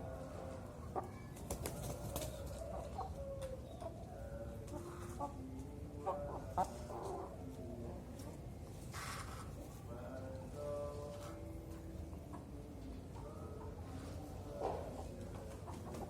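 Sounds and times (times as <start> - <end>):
doves cooing: 0.0 - 5.3.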